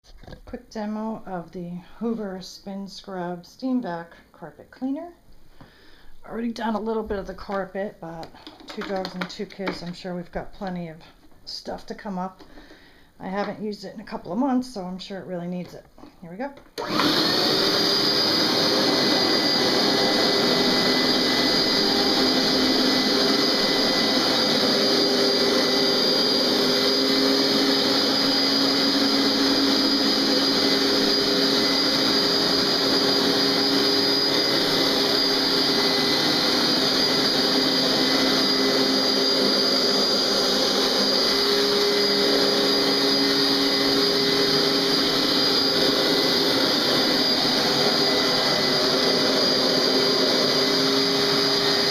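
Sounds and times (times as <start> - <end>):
carpet cleaner running: 16.8 - 51.9.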